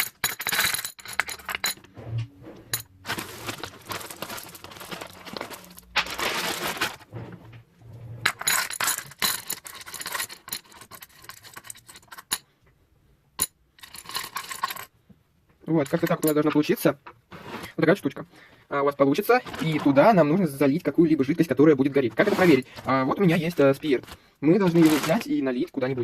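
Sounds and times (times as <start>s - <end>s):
gravel clattering into container: 22.1s - 25.4s.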